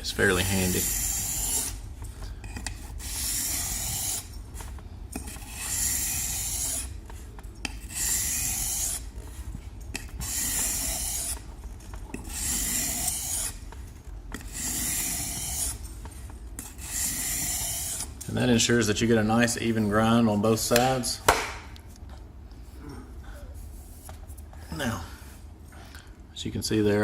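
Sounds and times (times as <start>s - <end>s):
knife scraping on whetstone: 0.4s - 1.8s, 2.4s - 11.5s, 12.1s - 18.3s.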